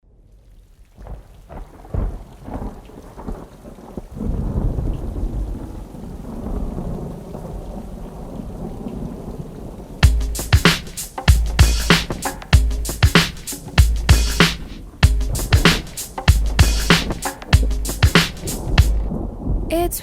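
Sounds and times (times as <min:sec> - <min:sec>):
rain falling: 0:00.2 - 0:20.0
rolling thunder: 0:01.0 - 0:10.6, 0:14.8 - 0:19.7
music beat hits: 0:10.0 - 0:19.1.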